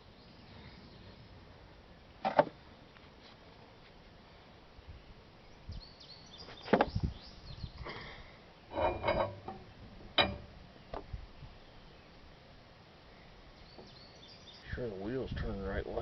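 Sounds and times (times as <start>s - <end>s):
metallic clanks and clinks: 8.7s - 10.6s.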